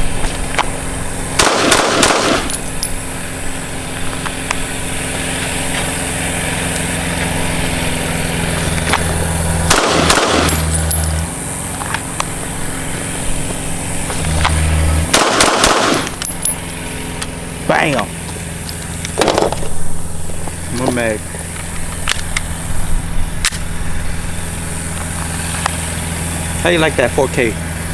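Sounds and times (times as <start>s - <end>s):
pistol shots: 1.3s - 2.7s, 9.6s - 10.8s, 15.1s - 16.2s.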